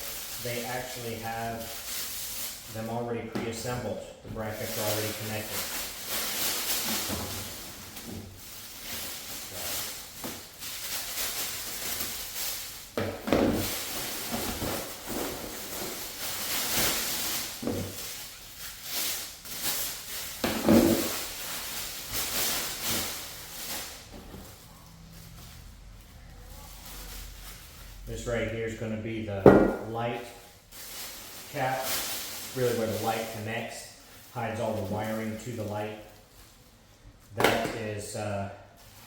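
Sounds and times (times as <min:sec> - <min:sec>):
packaging rustling: 0:04.4 - 0:28.0.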